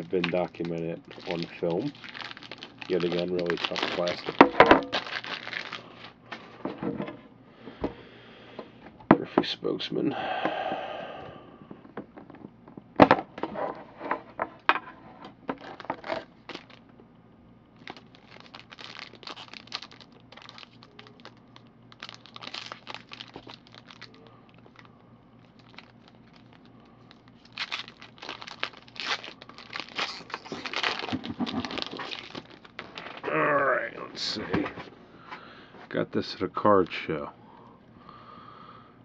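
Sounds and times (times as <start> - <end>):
plastic packaging crackling: 0.0 - 6.2, 15.6 - 16.8, 17.8 - 33.3.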